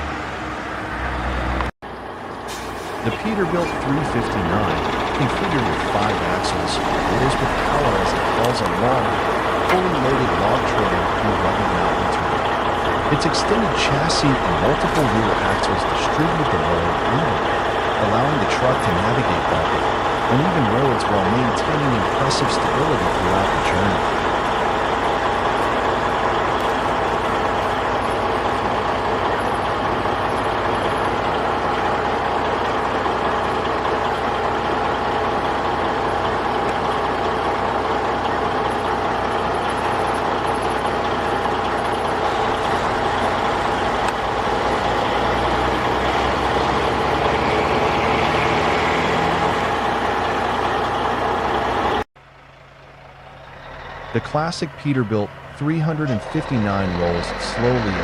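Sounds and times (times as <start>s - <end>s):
truck diesel engine rumbling: 0.0s - 58.0s.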